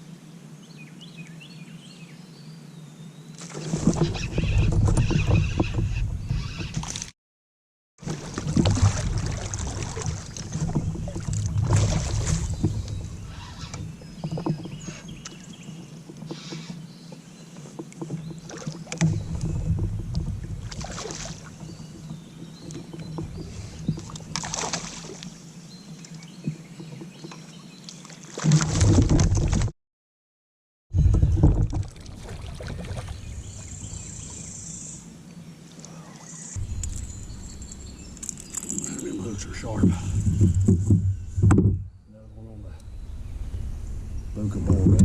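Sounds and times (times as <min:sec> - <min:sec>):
paddle splashes: 0:03.4 - 0:05.8, 0:08.0 - 0:25.4, 0:26.0 - 0:29.7, 0:31.1 - 0:34.5
water rushing and lapping: 0:08.0 - 0:29.7, 0:31.2 - 0:41.0.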